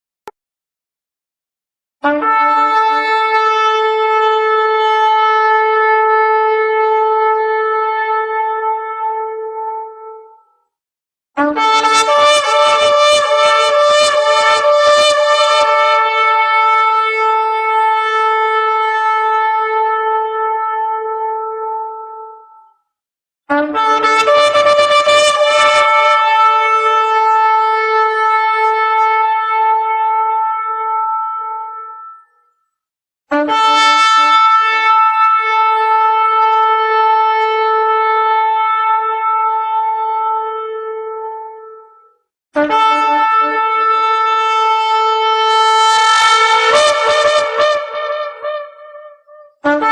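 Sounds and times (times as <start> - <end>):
horn blowing: 2.0 - 10.0, 11.4 - 22.6, 23.5 - 32.4, 33.3 - 42.0, 42.6 - 49.9
ram's horn blowing: 42.6 - 49.9.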